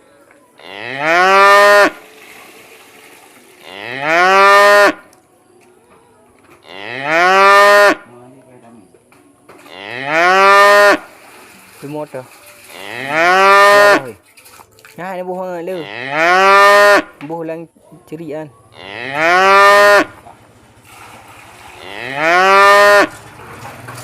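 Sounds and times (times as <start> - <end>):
cow mooing: 0.6 - 2.0, 3.6 - 5.1, 6.6 - 8.1, 9.7 - 11.1, 12.7 - 14.2, 15.8 - 17.2, 18.6 - 20.2, 21.8 - 23.2.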